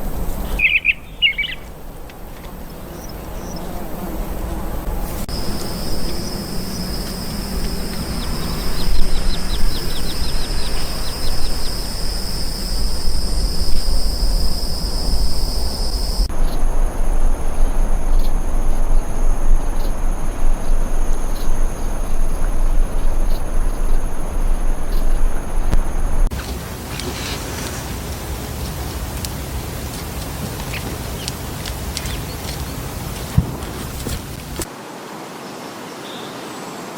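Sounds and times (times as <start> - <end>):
high-pitched insect drone: 0.0 - 26.3
constant low rumble: 0.0 - 34.7.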